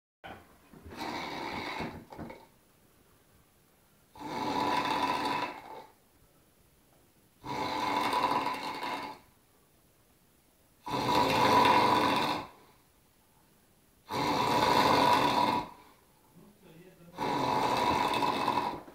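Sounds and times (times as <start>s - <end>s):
person snoring: 0.3s - 2.4s, 4.1s - 5.9s, 7.4s - 9.3s, 10.8s - 12.6s, 14.0s - 15.9s, 17.0s - 18.9s
quiet breathing: 11.3s - 13.6s, 15.3s - 18.9s.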